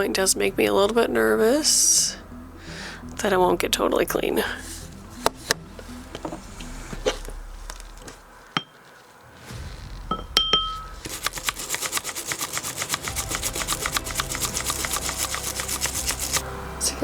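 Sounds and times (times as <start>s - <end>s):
rapid scrubbing of metal contacts: 10.9s - 16.4s.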